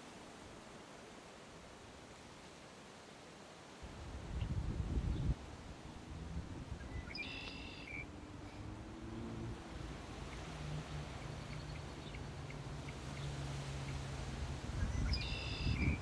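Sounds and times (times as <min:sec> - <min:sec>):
faint bird chirps: 0:06.8 - 0:08.1, 0:11.2 - 0:14.0, 0:14.8 - 0:16.0
buzzy bird call: 0:14.8 - 0:16.0.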